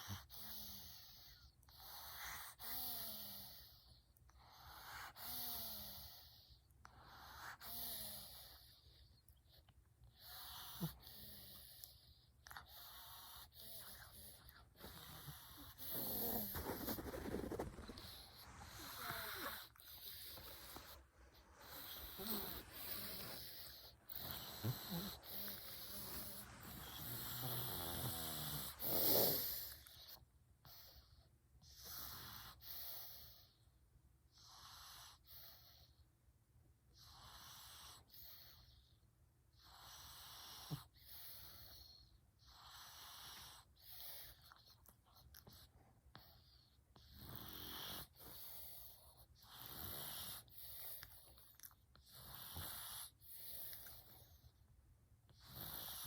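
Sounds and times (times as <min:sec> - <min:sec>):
cat snoring: 0:10.2 - 0:30.1, 0:46.2 - 0:54.3, 0:55.4 - 0:56.0.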